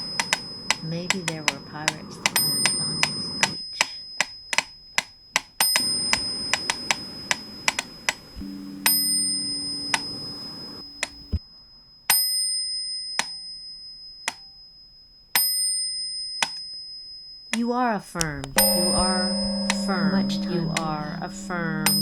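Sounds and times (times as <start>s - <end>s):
sharp ticking: 0.0s - 11.4s, 18.2s - 22.0s
low steady hum: 8.3s - 11.4s, 18.2s - 22.0s
small high-pitched bell ringing: 18.5s - 22.0s.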